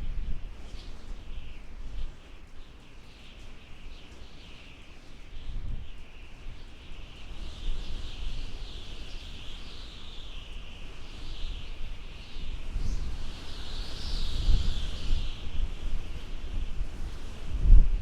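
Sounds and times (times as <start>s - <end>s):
low rumbling wind gusts: 0.0s - 4.5s, 5.2s - 18.0s
wind howling: 7.2s - 18.0s.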